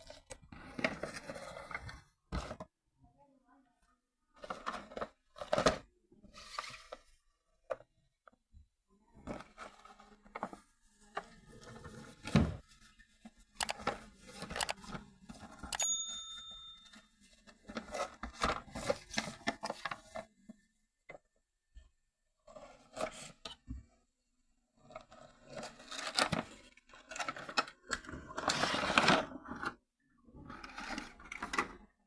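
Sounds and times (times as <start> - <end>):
short ringing ding: 15.8 - 16.9.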